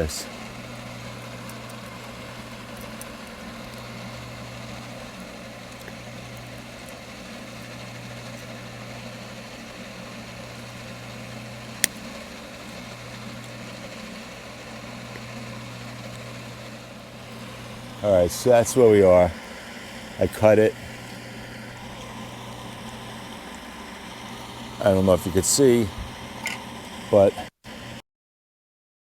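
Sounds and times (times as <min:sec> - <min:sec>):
pool pump motor humming: 0:00.0 - 0:28.0
sharp click: 0:11.8 - 0:12.2.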